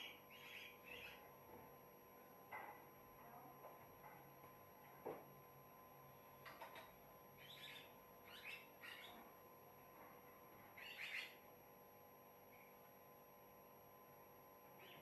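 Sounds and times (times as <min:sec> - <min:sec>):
bird chirping calls: 0:00.0 - 0:01.2, 0:07.4 - 0:09.2, 0:10.8 - 0:11.4.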